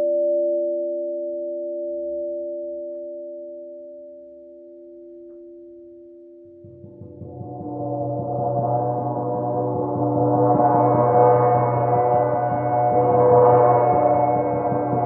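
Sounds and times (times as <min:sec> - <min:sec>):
gong roll with soft mallet: 0:06.6 - 0:15.0
steady pure tones: 0:06.6 - 0:15.0.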